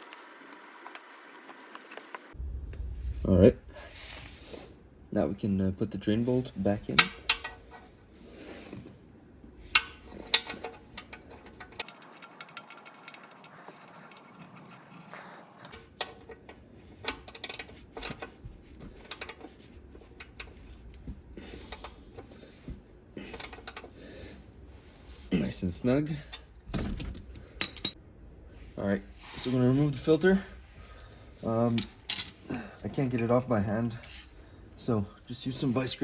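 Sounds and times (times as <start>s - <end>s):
metal clicks and clinks: 27.0s - 28.0s.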